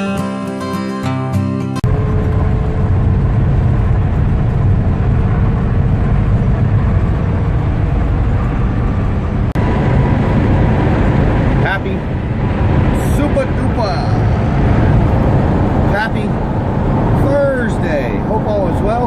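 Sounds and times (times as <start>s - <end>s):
strummed acoustic guitar: 0.0s - 3.0s
bus engine and road noise: 1.8s - 19.0s.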